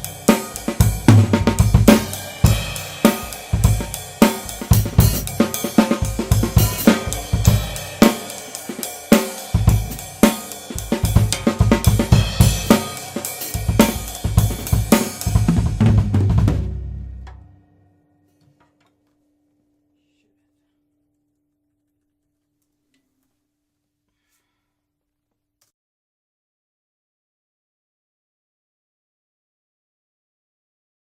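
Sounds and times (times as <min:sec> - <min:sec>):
cymbal crashes: 0:00.0 - 0:15.8
drum kit steady beat: 0:00.0 - 0:17.5.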